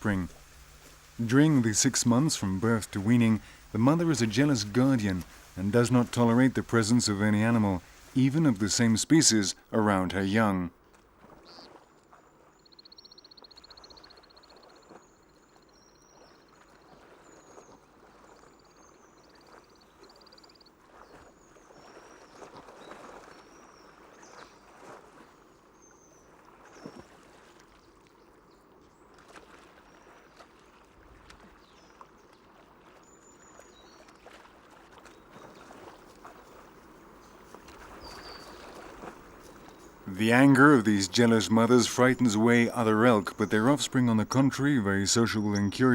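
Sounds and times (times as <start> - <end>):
soft splashes: 0.0 - 9.5, 16.1 - 45.9
small birds chirping: 0.0 - 10.6, 35.0 - 45.9.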